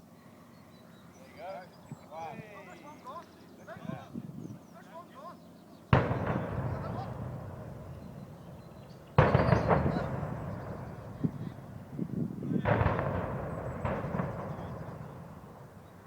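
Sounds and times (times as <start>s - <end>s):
distant explosion booms: 5.9s - 16.0s.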